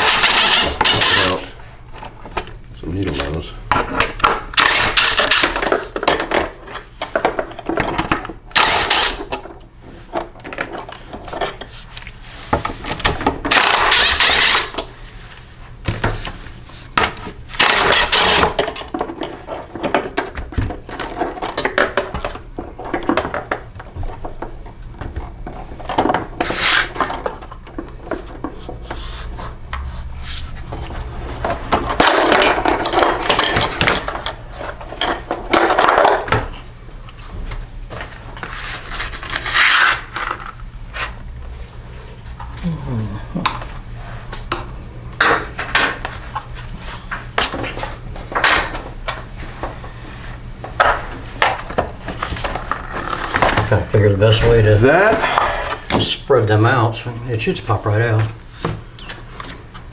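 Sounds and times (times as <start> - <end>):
metal tools clattering and scraping: 0.0 - 2.2, 30.7 - 36.6.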